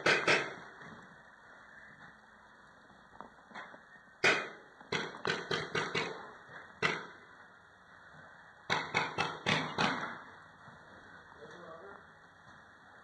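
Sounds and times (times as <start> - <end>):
paintball marker shots: 0.0 - 0.6, 4.2 - 6.2.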